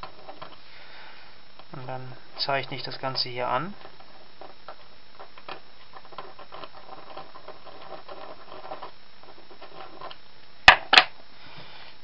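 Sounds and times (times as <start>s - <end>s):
marking tool scratching metal: 5.9s - 10.2s.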